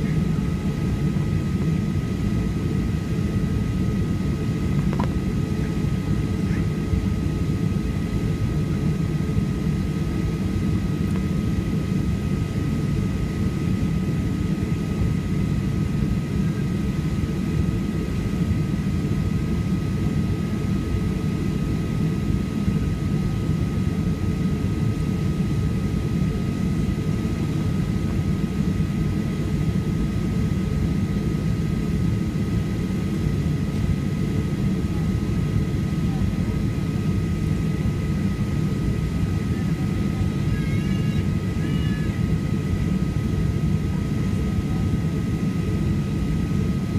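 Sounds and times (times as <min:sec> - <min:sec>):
airplane cabin engine rush: 0:00.0 - 0:46.9
faint steady whine: 0:00.0 - 0:46.9.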